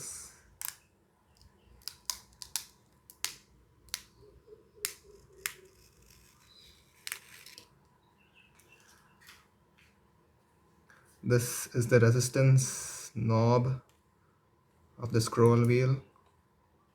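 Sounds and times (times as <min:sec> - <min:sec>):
plastic film peeling clicks: 0:00.6 - 0:04.2, 0:04.8 - 0:07.7.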